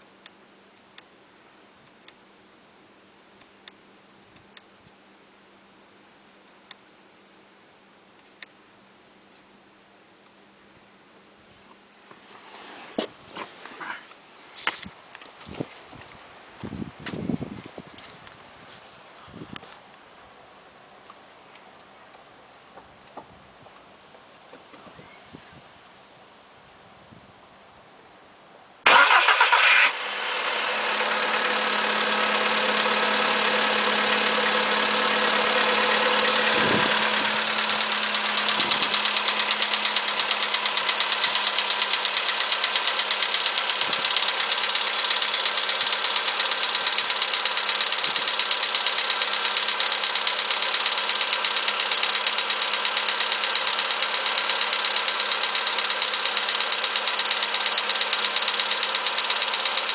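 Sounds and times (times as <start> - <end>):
engine idling with knock: 30.8 - 59.9.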